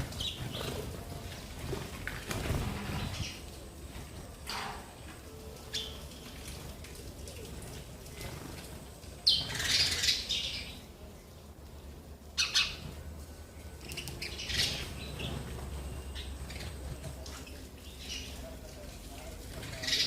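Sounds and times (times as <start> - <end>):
sparrows chirping and fluttering: 0.0 - 11.0, 12.4 - 13.0, 13.8 - 20.0.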